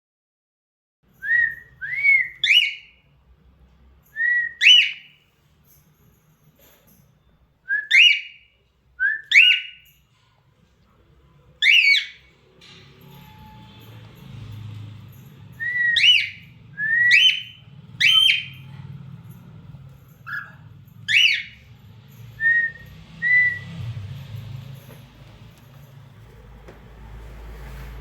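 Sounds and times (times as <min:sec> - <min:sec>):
cockatiel whistled chirps: 0:01.2 - 0:03.0, 0:04.2 - 0:05.1, 0:07.7 - 0:09.8, 0:11.6 - 0:12.2, 0:15.6 - 0:18.6, 0:20.3 - 0:21.6, 0:22.4 - 0:23.7.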